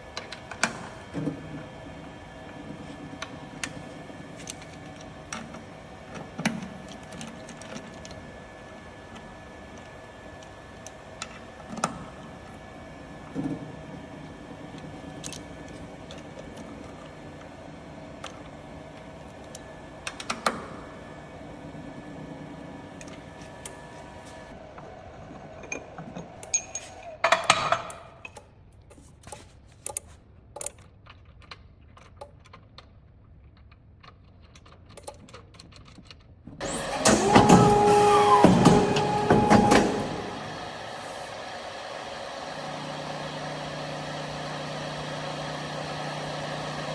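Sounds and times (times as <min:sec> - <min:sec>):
paper cutter machine hum: 0:00.0 - 0:26.4, 0:36.6 - 0:46.9
loud two-tone machine noise: 0:36.6 - 0:46.9.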